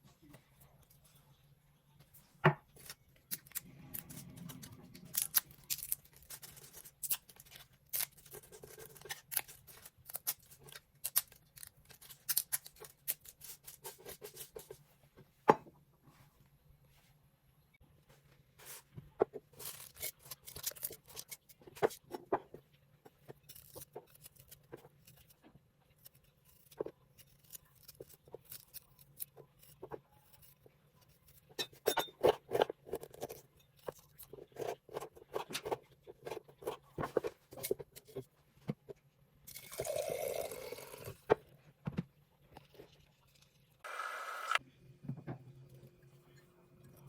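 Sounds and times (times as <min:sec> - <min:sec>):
liquid pouring: 0:39.5 - 0:41.2.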